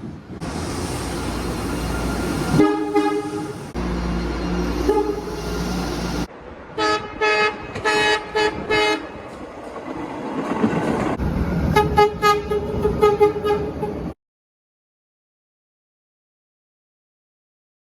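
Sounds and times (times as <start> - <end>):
train rumble: 0.0 - 14.2
subway train horn toots: 2.3 - 6.0, 6.8 - 9.2, 11.7 - 14.2.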